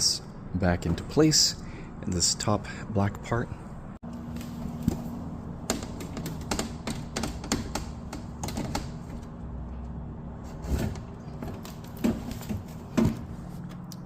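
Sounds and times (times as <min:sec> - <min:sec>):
metal panel clicking and knocking: 0:05.6 - 0:09.3.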